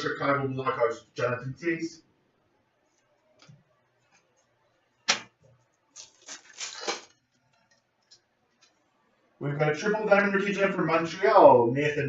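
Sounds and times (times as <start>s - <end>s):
card snapping: 5.1s - 5.4s
card pack crinkling: 5.9s - 7.2s.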